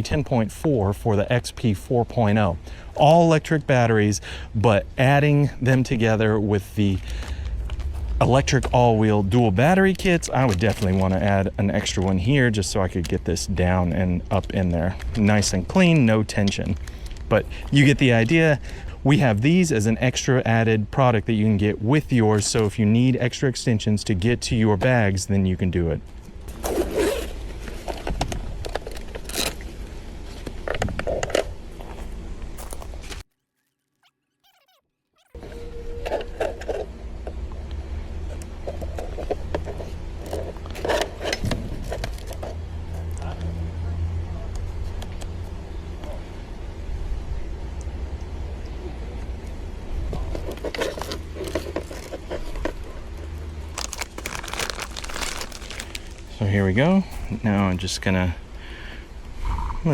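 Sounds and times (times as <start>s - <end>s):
steady low rumble: 0.0s - 21.0s
low steady rumble: 0.0s - 33.3s, 35.4s - 59.9s
handling clicks and rustles: 9.8s - 12.2s, 26.1s - 33.3s, 50.1s - 56.6s
hands handling bike gear: 50.3s - 52.9s, 53.6s - 56.4s.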